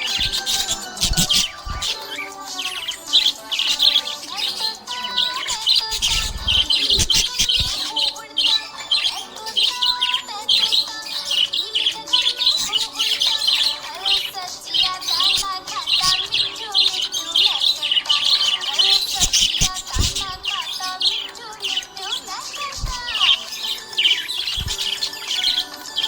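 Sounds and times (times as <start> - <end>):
budgerigar chirping and warbling: 0.0 - 26.0
dull low thuds: 19.6 - 20.5.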